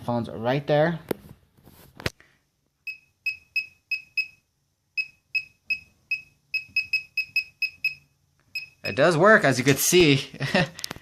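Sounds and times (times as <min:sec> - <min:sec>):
short electronic beeps: 0:02.9 - 0:04.4, 0:05.0 - 0:09.1.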